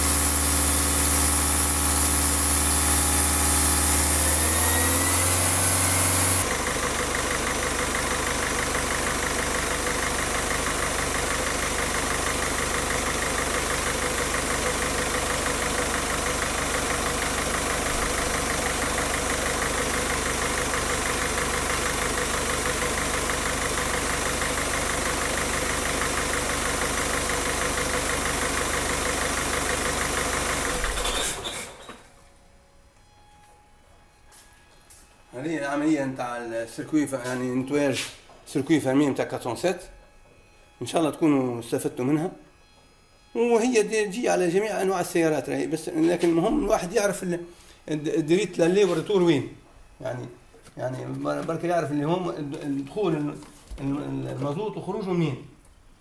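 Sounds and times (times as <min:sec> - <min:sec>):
diesel engine idling: 0:00.0 - 0:31.4.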